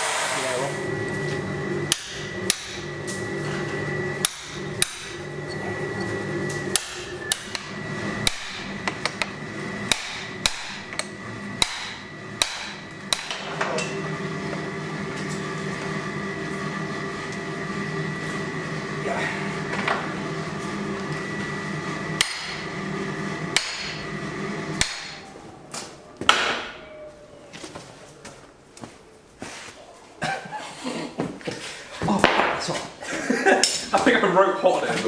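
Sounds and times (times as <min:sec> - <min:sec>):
air blower humming: 0:00.0 - 0:28.7
hammer striking steel on anvil: 0:01.9 - 0:02.8, 0:04.2 - 0:06.1, 0:06.7 - 0:09.3, 0:09.9 - 0:14.0, 0:22.2 - 0:22.6, 0:23.6 - 0:24.0, 0:24.8 - 0:25.2.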